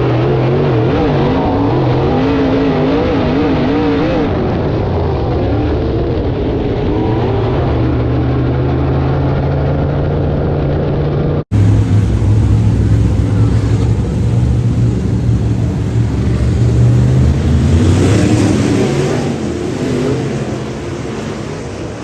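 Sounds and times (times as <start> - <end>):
rush of noise: 0.0 - 22.0
race car engine running: 11.5 - 22.0.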